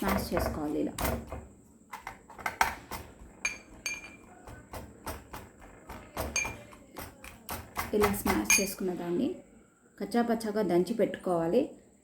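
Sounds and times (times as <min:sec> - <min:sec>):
pestle pounding in a mortar: 0:02.0 - 0:08.7
metallic ring: 0:03.4 - 0:04.2, 0:08.5 - 0:08.8.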